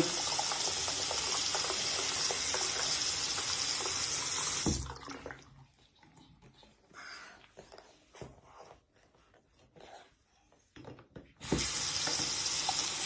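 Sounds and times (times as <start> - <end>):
water running from a tap: 0.0 - 5.6, 11.4 - 13.0.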